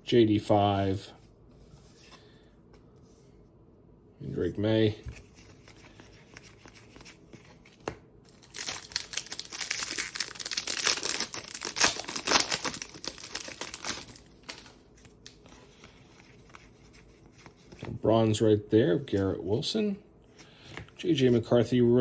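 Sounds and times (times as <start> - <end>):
wrapper tearing and crinkling: 8.3 - 14.8.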